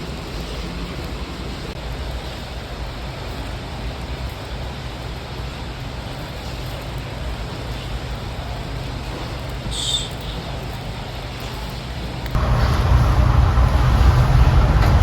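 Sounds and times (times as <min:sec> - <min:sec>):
wind buffeting microphone: 0:12.3 - 0:15.0.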